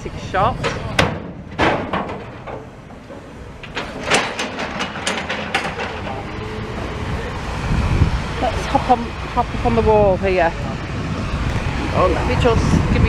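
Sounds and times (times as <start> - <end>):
wind on microphone: 4.9 - 13.0.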